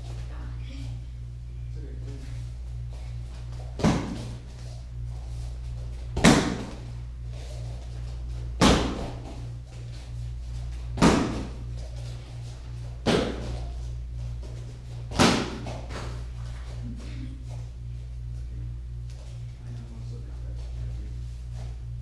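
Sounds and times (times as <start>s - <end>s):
kicks slapping a pad: 3.7s - 4.4s, 6.1s - 6.9s, 8.5s - 9.5s, 10.9s - 11.6s, 13.0s - 13.7s, 15.1s - 16.2s.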